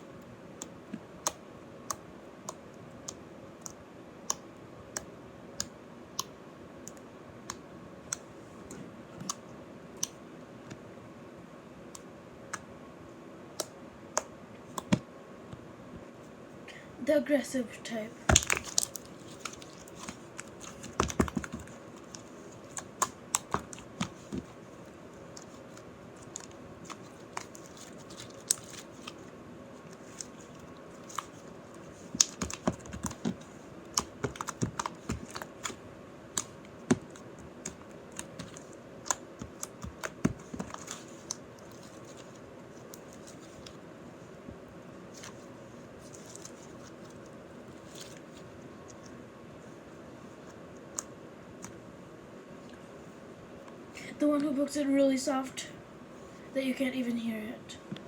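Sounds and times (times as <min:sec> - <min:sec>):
slime clicking and popping: 0:18.3 - 0:20.1.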